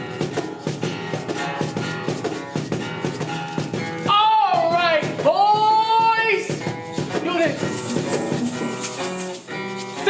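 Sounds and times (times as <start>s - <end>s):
drum and percussion beat: 0.0s - 10.0s
held chords: 6.8s - 10.0s
person singing: 7.6s - 9.1s.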